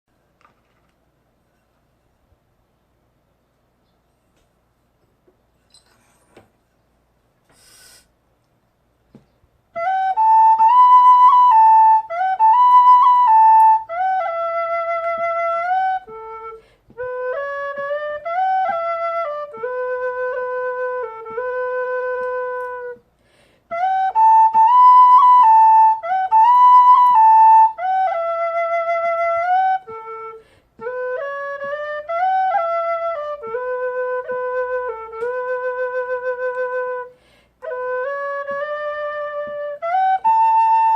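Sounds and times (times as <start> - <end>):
whistle solo melody: 9.8 - 23.0, 23.7 - 40.9.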